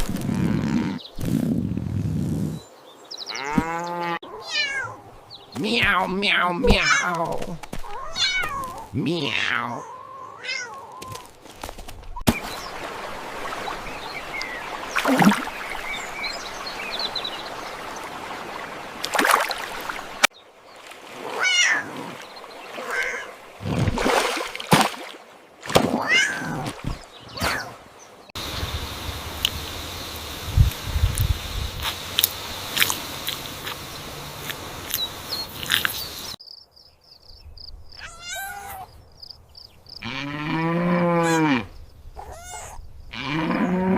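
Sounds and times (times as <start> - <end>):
cat meowing: 4.3 - 5.0, 7.8 - 11.2, 38.0 - 38.9, 42.2 - 42.8
steady background hiss: 28.4 - 36.8.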